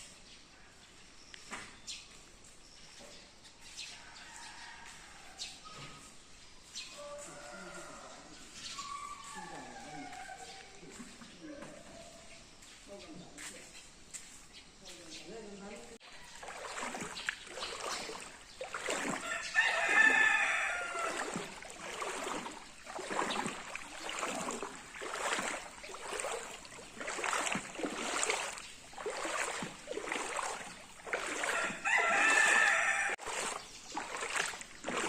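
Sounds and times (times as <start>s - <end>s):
rooster crowing: 18.8s - 22.5s, 31.1s - 33.3s.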